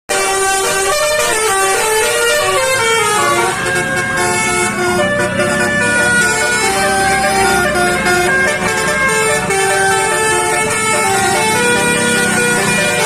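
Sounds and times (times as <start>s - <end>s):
vehicle horn playing a tune: 0.1s - 13.0s
low engine rumble: 1.6s - 13.0s.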